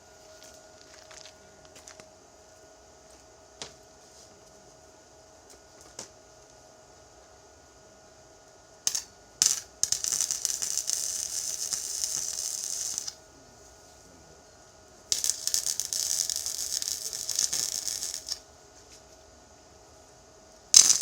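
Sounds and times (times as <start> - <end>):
welding arc crackling hiss: 8.8 - 13.2, 15.1 - 18.5, 20.7 - 21.0.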